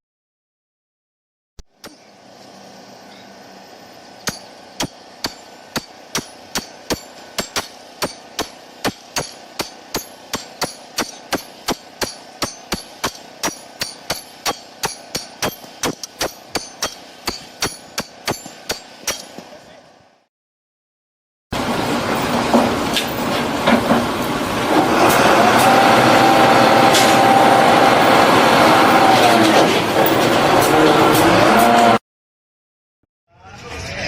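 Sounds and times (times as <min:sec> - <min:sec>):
steady background noise: 0:01.7 - 0:20.2
hammer blows: 0:04.2 - 0:19.6, 0:24.7 - 0:32.0.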